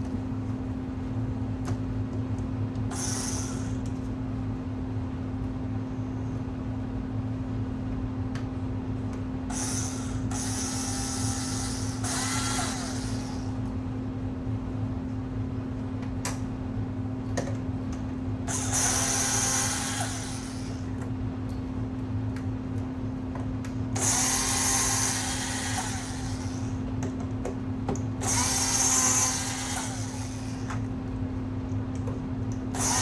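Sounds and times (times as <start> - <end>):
steady low hum: 0.0 - 33.0
power drill whining: 9.5 - 13.6, 18.5 - 20.9, 24.0 - 26.8, 28.2 - 30.9, 32.7 - 33.0.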